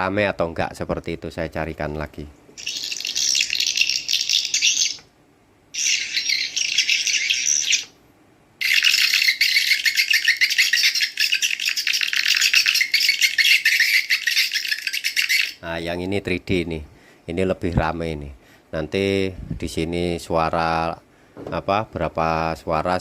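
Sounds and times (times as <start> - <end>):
high twittering of many birds: 2.6 - 5.1, 5.7 - 8.0, 8.6 - 15.6.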